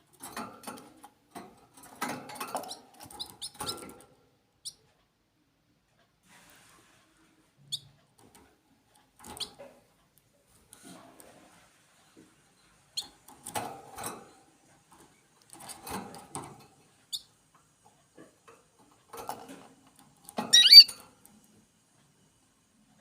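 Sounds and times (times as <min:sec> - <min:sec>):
small birds chirping: 0:02.7 - 0:03.7, 0:20.5 - 0:20.9.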